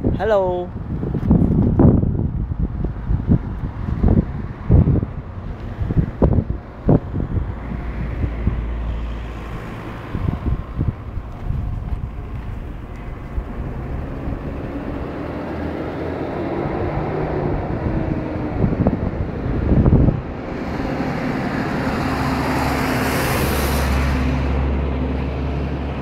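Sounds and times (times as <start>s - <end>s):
car engine and road rumble: 0.0s - 26.0s
wind hitting microphone: 0.0s - 26.0s.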